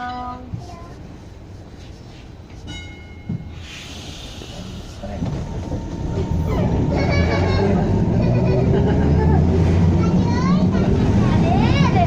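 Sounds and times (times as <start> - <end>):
tram rumble: 0.0 - 12.0
hiss of air: 3.6 - 5.1.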